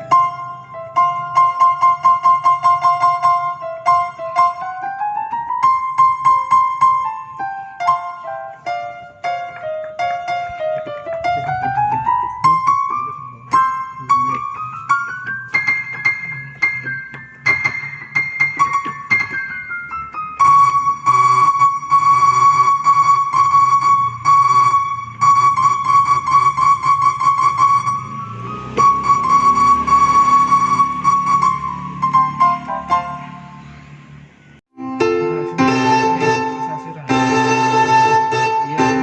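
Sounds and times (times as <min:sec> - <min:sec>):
keyboard playing piano notes: 0:00.0 - 0:39.0.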